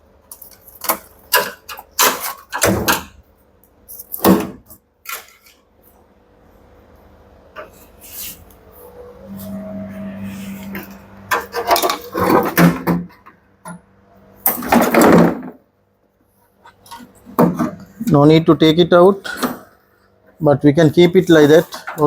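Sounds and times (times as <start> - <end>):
low hum: 8.5 - 14.5.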